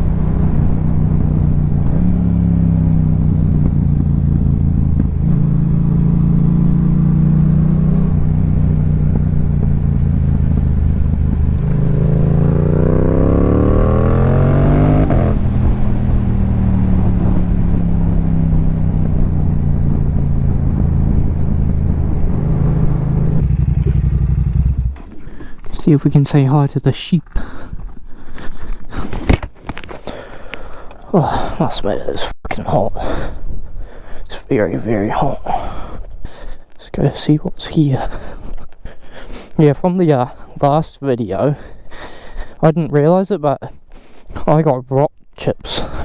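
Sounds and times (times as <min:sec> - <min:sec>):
motorcycle engine revving: 0:00.0 - 0:25.8.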